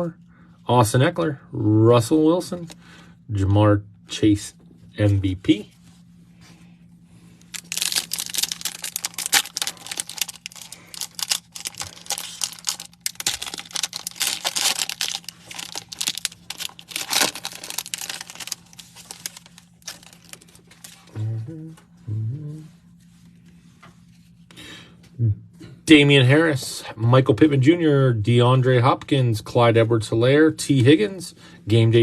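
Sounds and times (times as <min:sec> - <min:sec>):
wrapper crinkling and tearing: 0:07.4 - 0:21.1.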